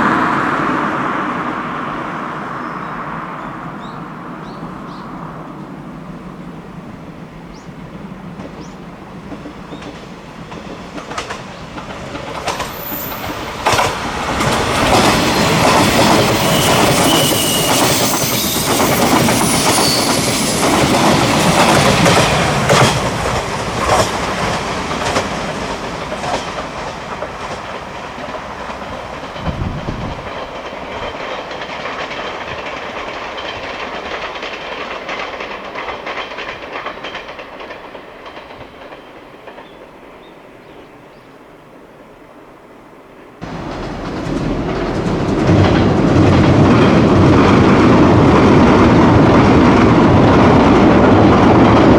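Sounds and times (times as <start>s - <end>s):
electric train passing: 0.0s - 51.9s
wheels clicking over rail joints: 8.3s - 39.9s, 43.4s - 51.9s.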